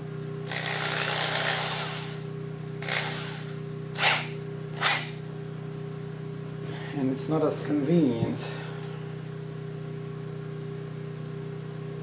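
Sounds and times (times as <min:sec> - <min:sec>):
electric drill drilling wood: 0:00.5 - 0:02.2, 0:02.8 - 0:05.2.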